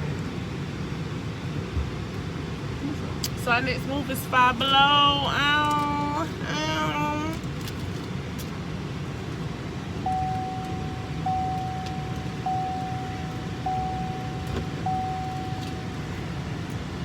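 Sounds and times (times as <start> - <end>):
low car noise: 0.0 - 17.0
car warning chime beeping: 10.0 - 17.0.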